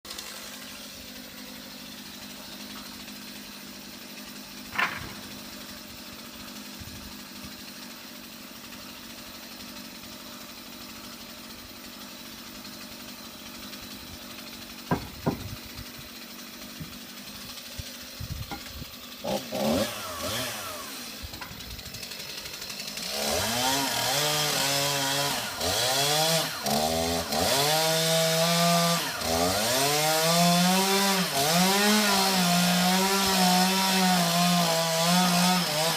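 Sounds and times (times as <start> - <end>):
chainsaw revving: 0.1 - 35.9
sharp knocks: 4.7 - 5.3, 14.9 - 15.6.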